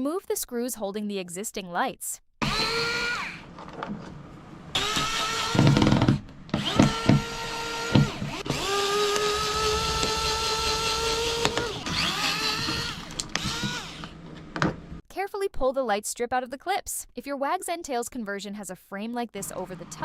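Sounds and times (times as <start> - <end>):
power drill whining: 2.4 - 3.5, 4.7 - 14.2.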